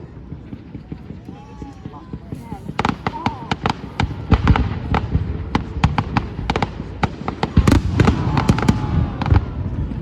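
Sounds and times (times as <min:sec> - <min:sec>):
fireworks cracking and banging: 0:00.0 - 0:10.0.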